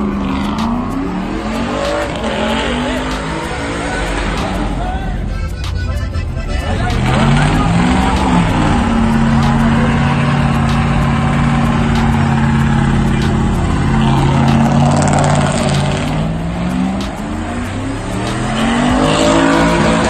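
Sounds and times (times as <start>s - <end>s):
truck engine revving: 0.0s - 20.0s.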